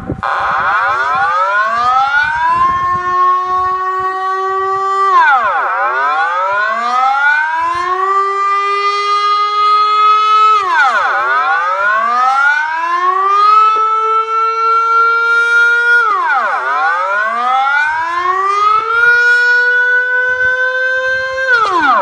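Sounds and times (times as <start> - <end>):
warning siren wailing: 0.0 - 22.0.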